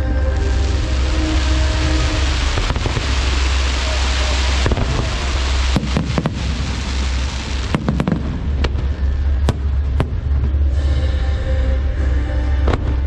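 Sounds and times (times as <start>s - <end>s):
faint music: 0.0s - 13.0s
low rumble and crackle: 0.0s - 13.0s
fireworks bangs: 0.3s - 10.8s.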